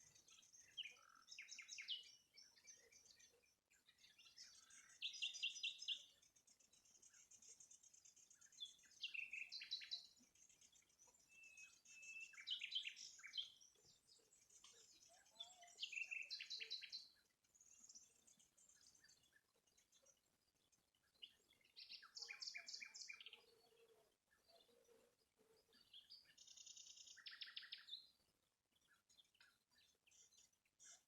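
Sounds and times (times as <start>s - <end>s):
songbird trilling: 15.0s - 17.0s.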